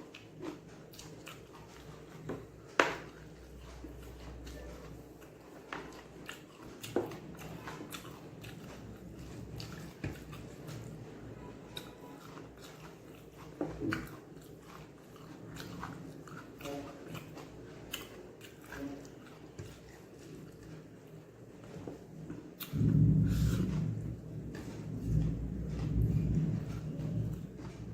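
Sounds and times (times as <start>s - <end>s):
person chewing with lip smacks: 11.7s - 20.7s.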